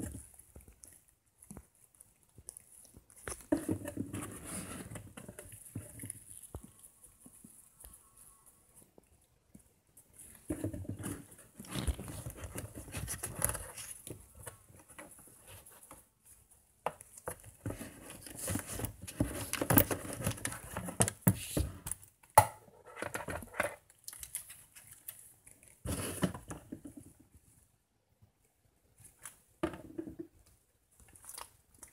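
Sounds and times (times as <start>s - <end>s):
packaging rustling and crinkling: 10.1s - 16.2s.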